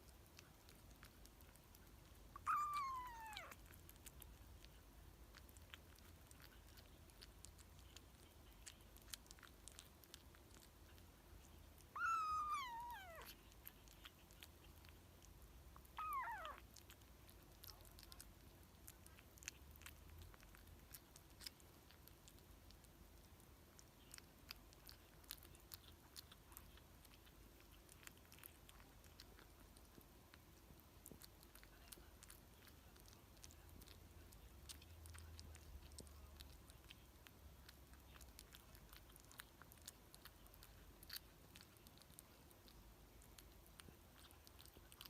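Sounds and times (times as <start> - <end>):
faint chewing clicks: 0.0 - 45.0
kitten meowing: 2.4 - 3.6, 11.9 - 13.3, 15.9 - 16.6.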